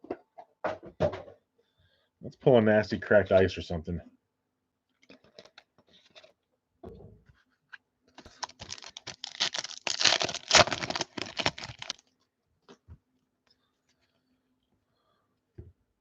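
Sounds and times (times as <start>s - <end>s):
foil wrapper crinkling: 8.2s - 12.1s.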